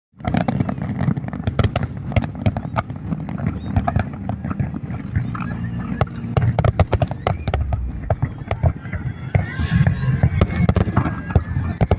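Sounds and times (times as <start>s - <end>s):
fireworks bangs and crackles: 0.2s - 11.9s
low rumble: 3.1s - 11.8s.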